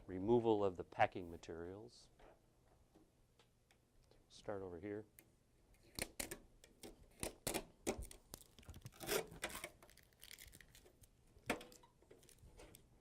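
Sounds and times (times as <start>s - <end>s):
packing material tearing and crinkling: 8.0s - 12.9s
sharp crackles: 9.8s - 11.1s.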